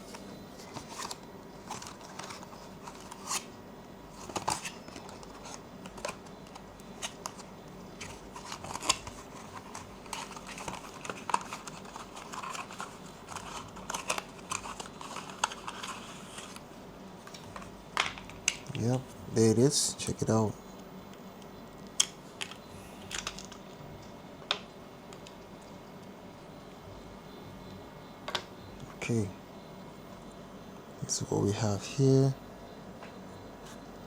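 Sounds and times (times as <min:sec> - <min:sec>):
packaging being opened by hand: 0:00.0 - 0:19.0, 0:21.9 - 0:23.8.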